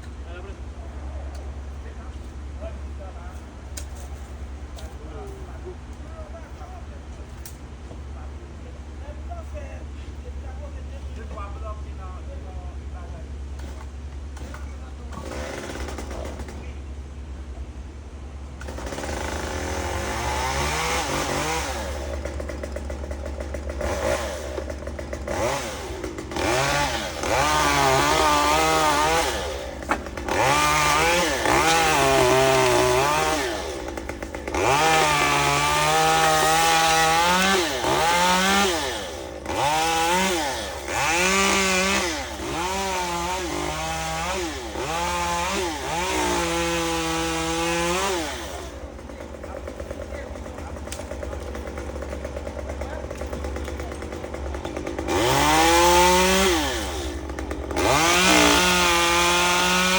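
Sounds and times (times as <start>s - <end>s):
chainsaw engine revving: 13.6s - 16.7s, 18.6s - 59.9s.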